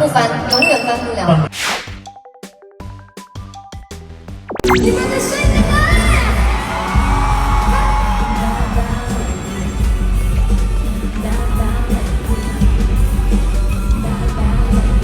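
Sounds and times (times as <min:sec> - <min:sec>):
person singing: 0:04.6 - 0:10.0
music with heavy bass beat: 0:04.8 - 0:15.0.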